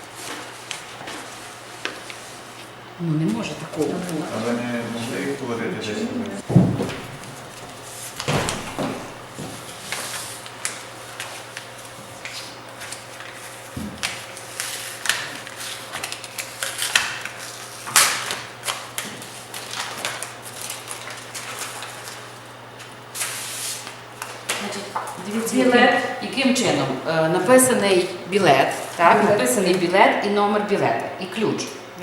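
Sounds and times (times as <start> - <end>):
faint room hum: 0.0 - 32.0
paper rustling: 6.5 - 24.7.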